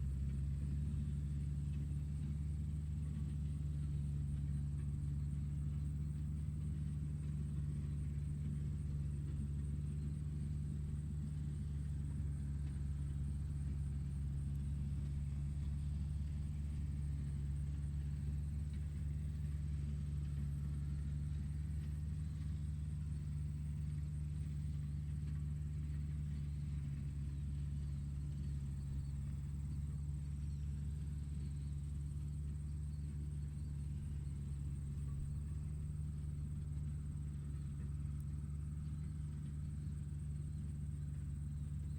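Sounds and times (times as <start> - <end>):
tractor engine running: 0.0 - 41.9.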